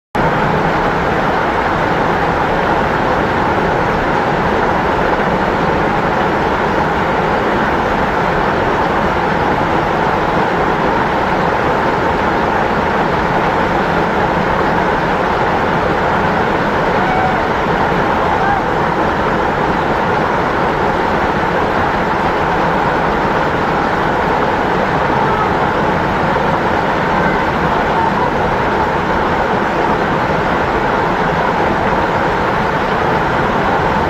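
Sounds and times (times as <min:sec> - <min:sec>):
waterfall rushing: 0:00.2 - 0:34.0.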